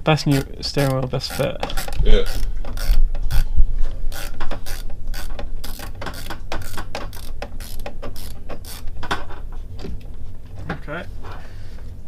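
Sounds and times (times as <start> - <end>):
socket ratchet clicking: 0.3 - 3.5, 4.1 - 9.0.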